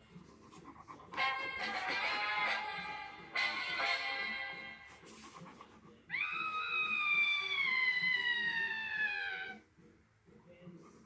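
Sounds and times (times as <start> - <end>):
cat meowing: 6.1 - 9.6.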